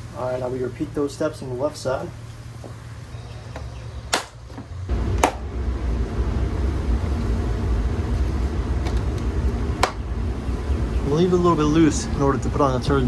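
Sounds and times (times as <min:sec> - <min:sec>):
wind buffeting microphone: 0:04.9 - 0:13.0.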